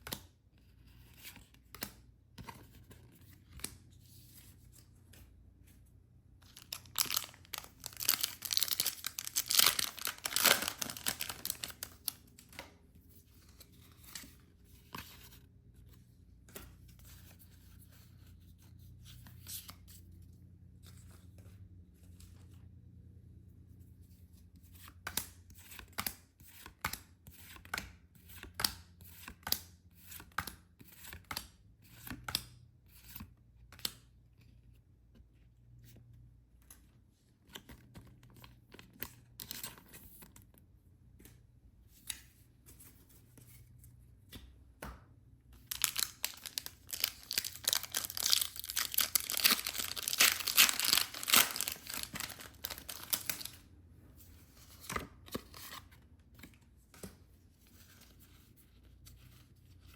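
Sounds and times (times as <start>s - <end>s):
plastic packaging tearing: 6.6s - 12.1s, 45.7s - 53.5s.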